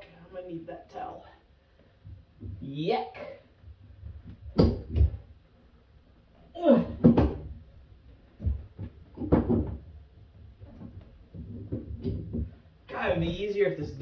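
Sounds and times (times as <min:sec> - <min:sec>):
knocks inside a cabinet: 0:09.2 - 0:09.8.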